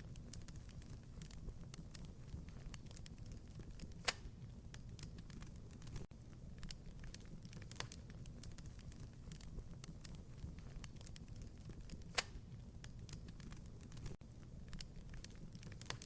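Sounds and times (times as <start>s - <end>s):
flames rumbling: 0.0s - 16.0s
wood fire crackling: 0.0s - 16.0s
loud pop of fire: 12.0s - 12.4s.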